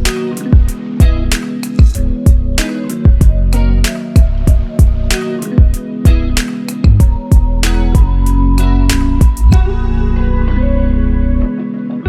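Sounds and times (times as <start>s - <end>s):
regular beat: 0.0s - 10.2s
plucked and strummed guitar: 0.0s - 12.0s
sustained low notes: 3.2s - 11.5s.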